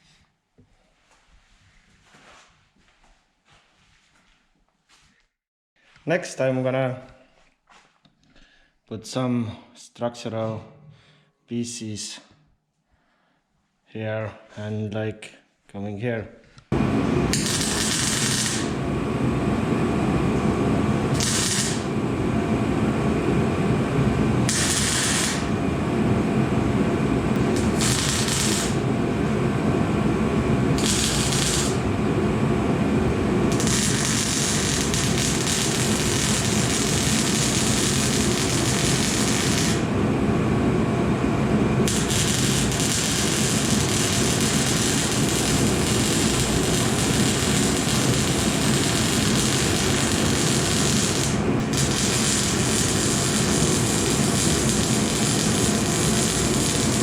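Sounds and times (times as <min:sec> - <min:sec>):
machine drone: 0:16.7 - 0:57.0
hissing bursts: 0:17.3 - 0:18.8, 0:21.1 - 0:22.0, 0:24.5 - 0:25.6, 0:27.4 - 0:28.9, 0:33.5 - 0:39.9, 0:41.9 - 0:57.0.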